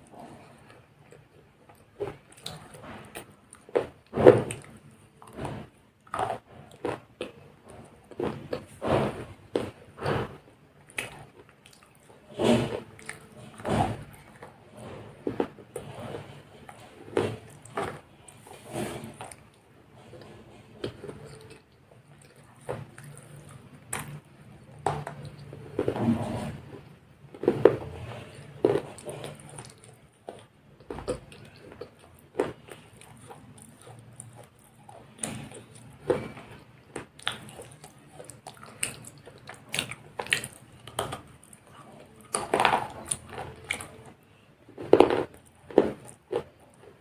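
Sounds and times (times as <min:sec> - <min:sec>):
biting chocolate wafer bars: 0:27.3 - 0:47.0.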